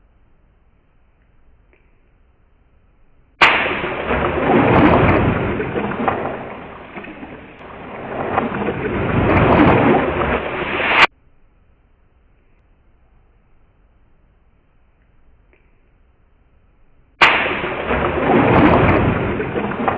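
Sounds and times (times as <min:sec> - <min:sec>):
click: 0:01.1 - 0:02.2, 0:14.9 - 0:16.0
loud rushing noise: 0:03.4 - 0:11.1.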